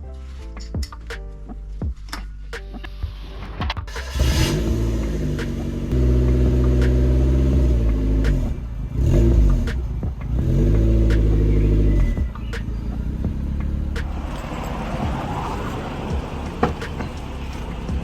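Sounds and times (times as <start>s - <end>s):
car engine revving: 3.9s - 18.0s.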